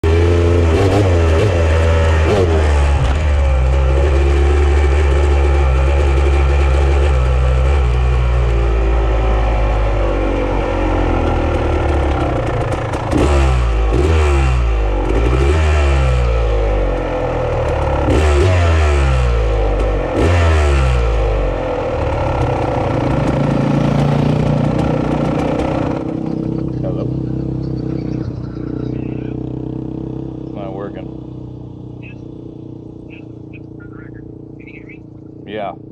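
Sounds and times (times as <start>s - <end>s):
off-road vehicle engine revving: 0.0s - 35.9s.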